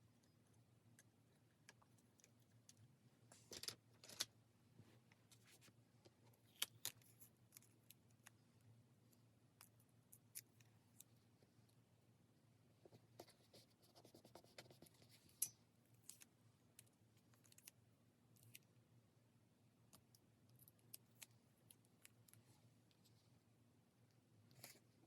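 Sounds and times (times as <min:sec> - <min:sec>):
pen scratching on paper: 0:13.2 - 0:15.2.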